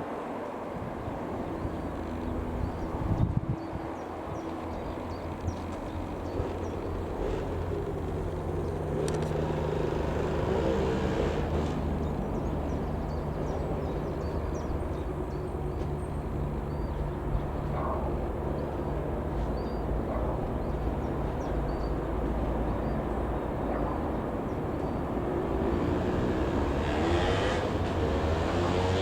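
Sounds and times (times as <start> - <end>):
propeller drone: 0.0 - 29.0
aircraft piston engine running: 1.2 - 28.8.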